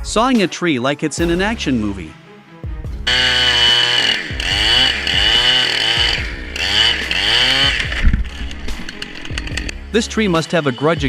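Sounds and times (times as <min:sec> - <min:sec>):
chainsaw engine revving: 0:03.0 - 0:11.0
chain whine: 0:03.1 - 0:09.9.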